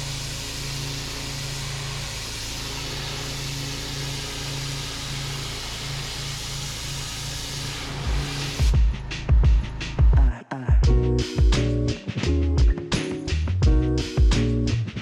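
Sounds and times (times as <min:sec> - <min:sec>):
water jet hissing: 0:00.0 - 0:08.8
pressure washer engine hum: 0:00.0 - 0:10.0.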